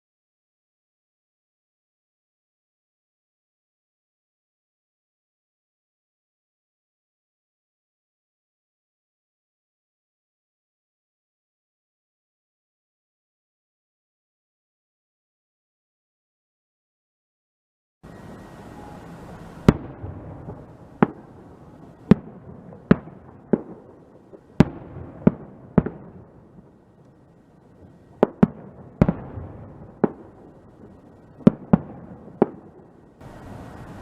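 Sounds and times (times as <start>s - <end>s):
fireworks bangs echoing: 18.1s - 34.0s.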